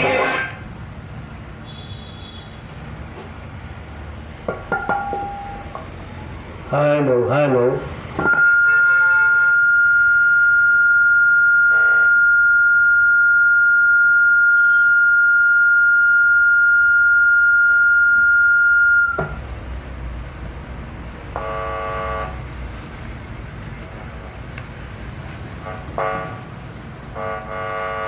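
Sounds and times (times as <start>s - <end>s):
high feedback whistle: 8.2s - 19.4s
short buzzy tone: 11.6s - 13.2s.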